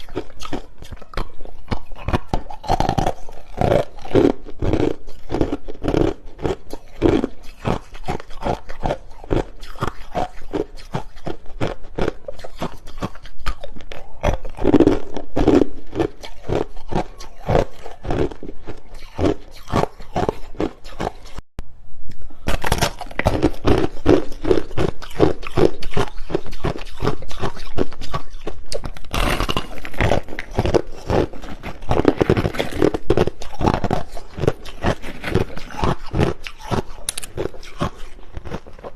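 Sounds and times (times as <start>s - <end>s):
chewing crushed ice crunches: 0.0s - 21.4s, 22.4s - 38.9s.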